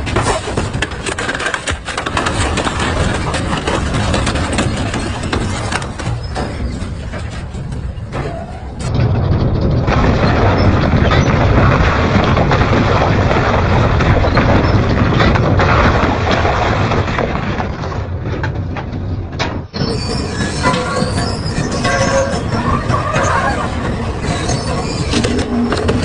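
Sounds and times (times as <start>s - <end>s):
high metal squealing: 19.7s - 26.0s
metal shredder grinding: 19.8s - 26.0s.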